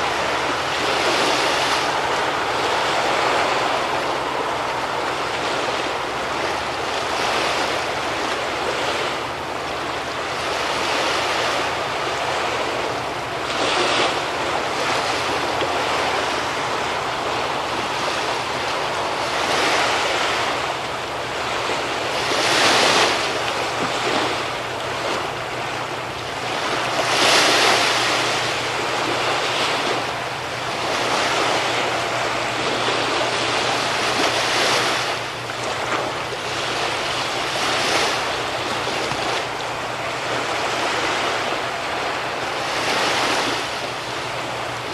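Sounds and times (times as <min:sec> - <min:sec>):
ferry engine hum: 0:00.0 - 0:44.9
sea waves breaking on shore: 0:00.0 - 0:44.9.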